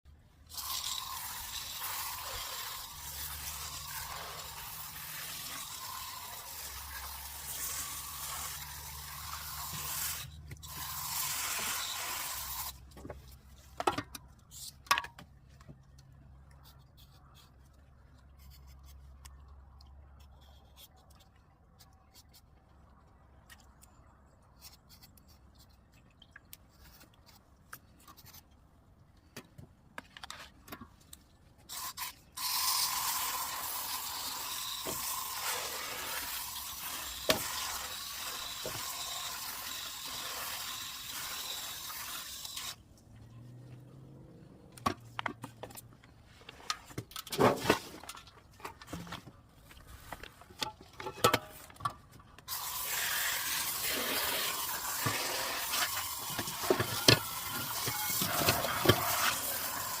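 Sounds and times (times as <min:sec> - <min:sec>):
water running from a tap: 0:00.5 - 0:12.7, 0:32.4 - 0:42.7, 0:52.5 - 1:00.0.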